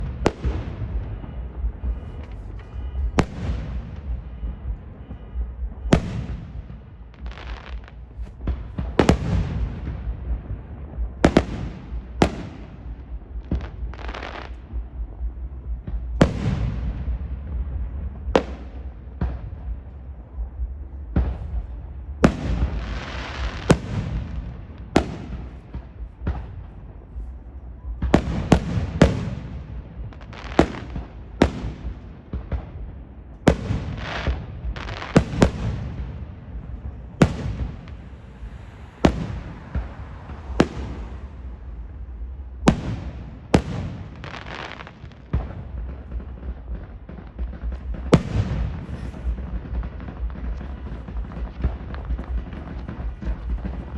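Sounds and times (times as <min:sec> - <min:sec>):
fireworks bangs: 0:00.0 - 0:53.9
steady low rumble: 0:00.0 - 0:53.9.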